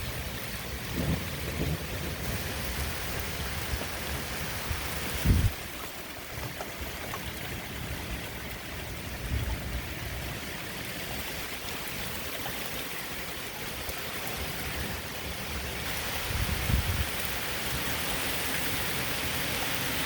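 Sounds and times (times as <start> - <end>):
wind buffeting microphone: 0.0 - 7.0, 7.6 - 11.7, 15.6 - 17.4
strong wind rushing: 0.7 - 5.7.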